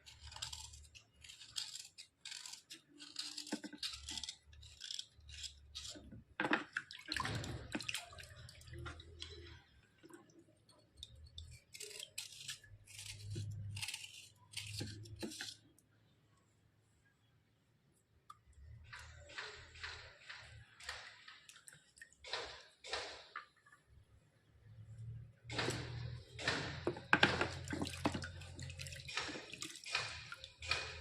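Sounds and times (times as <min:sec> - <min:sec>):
slate pencil scraping: 0:00.0 - 0:06.2.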